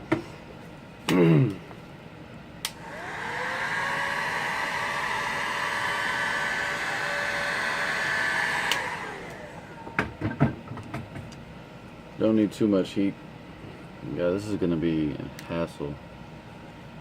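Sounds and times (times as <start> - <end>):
hot-air blower motor whining: 0.0 - 17.0
hot-air blower switch click: 2.6 - 3.2, 8.4 - 9.5.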